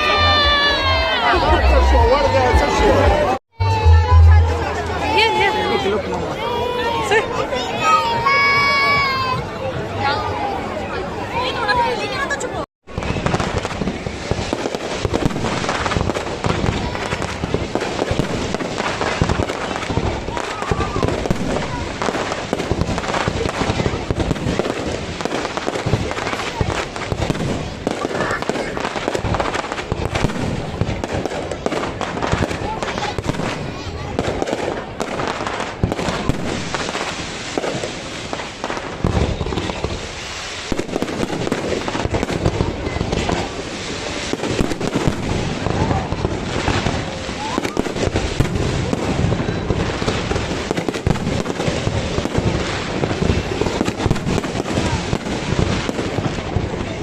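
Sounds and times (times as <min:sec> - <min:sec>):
fireworks crackling and banging: 0:00.0 - 0:57.0.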